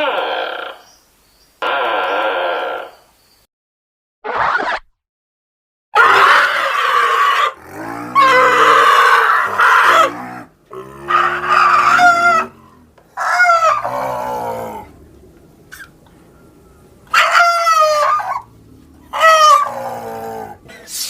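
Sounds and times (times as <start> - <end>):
monster screeching roars: 6.0 - 15.0, 19.1 - 20.6.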